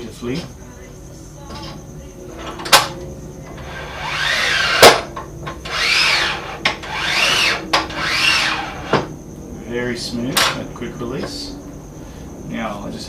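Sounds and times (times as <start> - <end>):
vise jaw sliding: 3.6 - 5.0.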